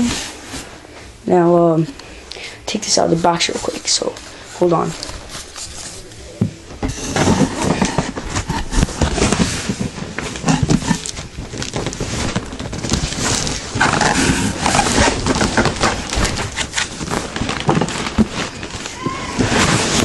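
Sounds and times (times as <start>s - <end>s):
cardboard box scraping and rustling: 6.8s - 20.0s.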